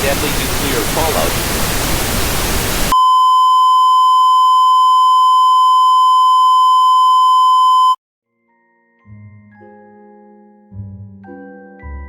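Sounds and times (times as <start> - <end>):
electronic test tone: 2.9 - 8.0.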